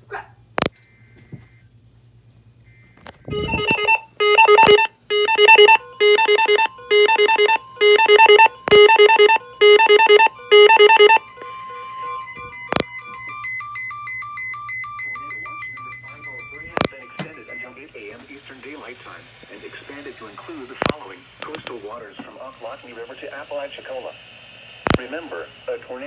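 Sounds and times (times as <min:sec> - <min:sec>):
sharp clicks: 0:00.5 - 0:00.8, 0:02.9 - 0:11.2, 0:12.6 - 0:12.9, 0:16.6 - 0:17.4, 0:20.8 - 0:21.8, 0:24.8 - 0:25.1
fluttering electronic beep bursts: 0:02.7 - 0:21.7
steady alert tone: 0:03.3 - 0:20.6.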